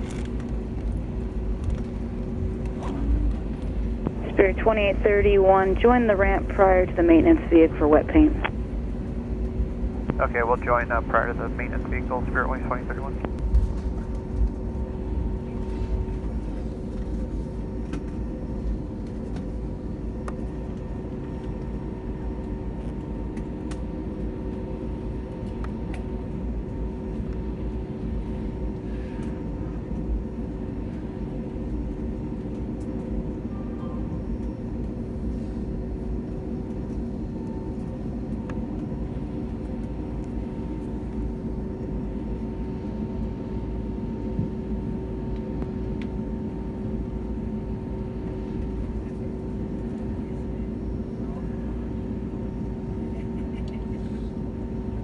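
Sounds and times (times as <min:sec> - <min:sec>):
aircraft cabin rumble: 0:00.0 - 0:55.0
idling engines hum: 0:00.3 - 0:18.3.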